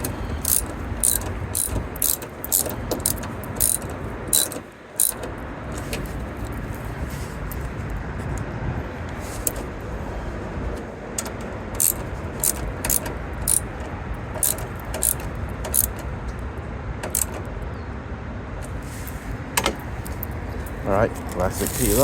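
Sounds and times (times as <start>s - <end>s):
steady low rumble: 0.0s - 22.0s
sharp plastic clicks: 11.2s - 16.2s, 17.0s - 17.5s.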